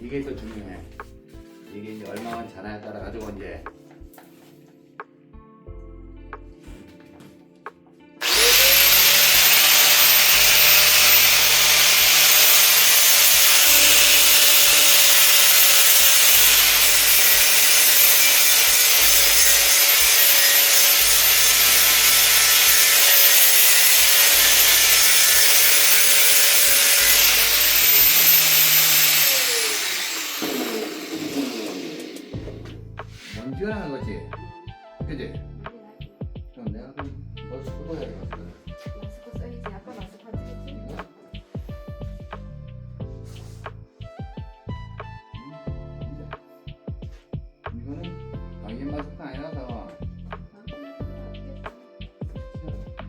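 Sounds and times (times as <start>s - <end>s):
power tool grinding metal: 8.2s - 32.6s.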